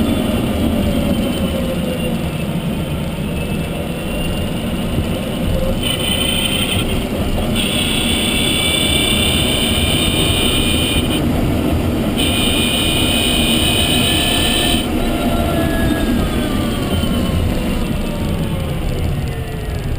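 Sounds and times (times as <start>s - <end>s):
road and tyre rumble: 0.0s - 19.9s
electric motor whining: 5.1s - 11.2s, 12.2s - 19.8s.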